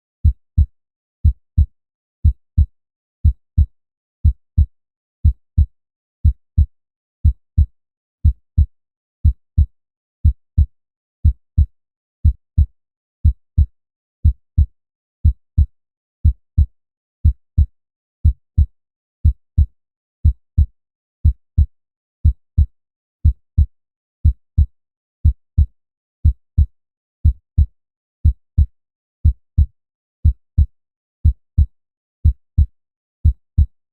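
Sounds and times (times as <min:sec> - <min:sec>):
heartbeat thumps: 0:29.3 - 0:29.7.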